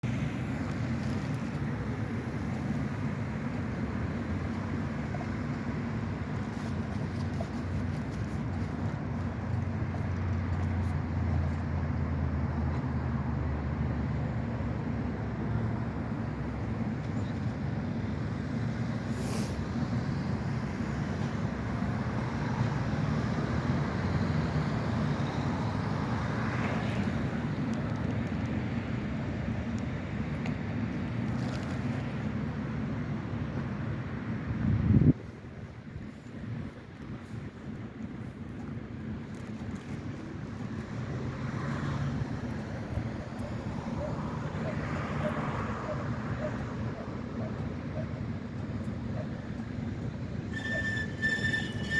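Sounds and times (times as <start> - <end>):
tram rumbling: 0.0 - 51.9
tram wheels squealing: 49.1 - 51.9.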